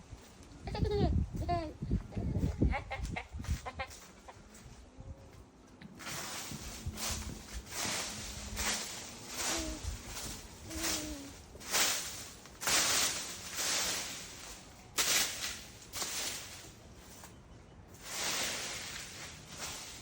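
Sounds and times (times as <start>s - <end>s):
swishing strokes through grass: 6.0s - 20.0s.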